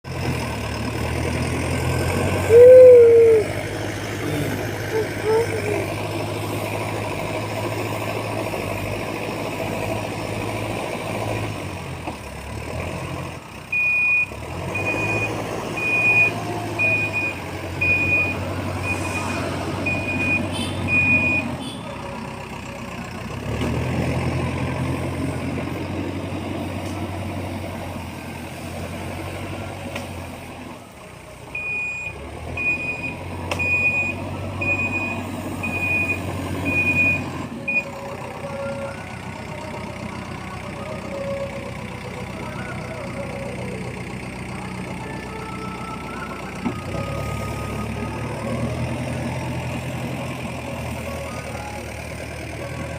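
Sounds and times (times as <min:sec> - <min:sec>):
diesel loader engine running: 0:00.0 - 0:52.9
reversing alarm beeping: 0:13.7 - 0:21.7, 0:31.6 - 0:39.0.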